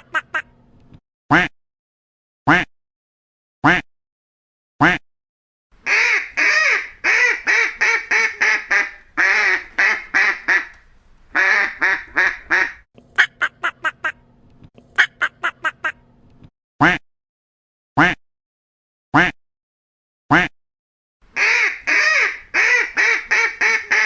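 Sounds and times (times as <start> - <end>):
duck quacking: 5.8 - 12.8, 21.4 - 24.0.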